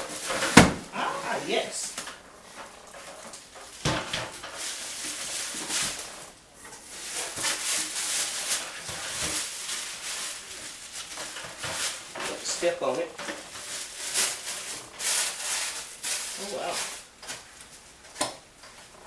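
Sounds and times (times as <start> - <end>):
cardboard scraping and rustling: 3.0 - 17.8.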